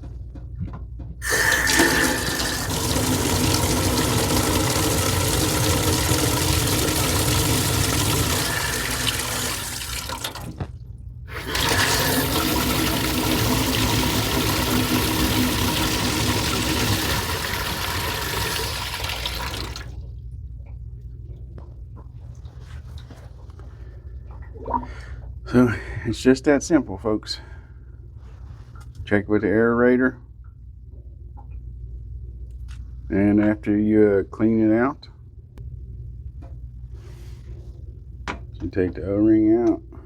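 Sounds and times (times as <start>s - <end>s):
faucet water rushing: 1.2s - 10.6s, 11.3s - 19.9s.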